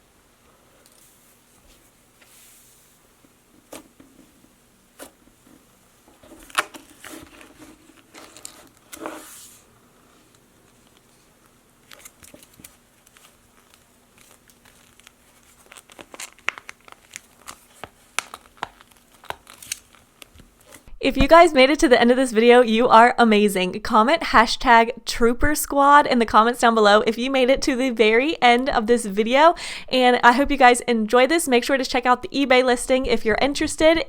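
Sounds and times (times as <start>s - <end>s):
slime squishing and crackling: 11.8s - 20.9s.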